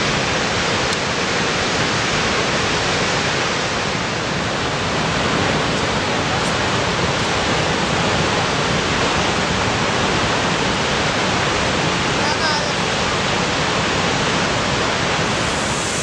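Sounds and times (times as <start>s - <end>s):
waterfall rushing: 14.8s - 16.0s.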